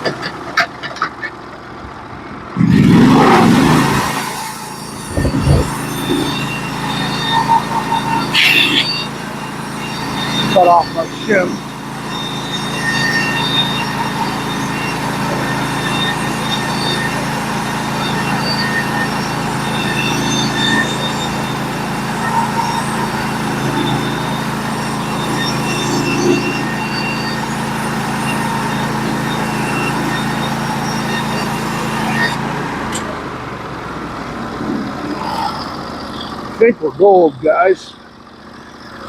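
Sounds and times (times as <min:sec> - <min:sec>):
band sawmill engine humming: 0:00.0 - 0:39.0
saw band cutting log: 0:03.7 - 0:33.2.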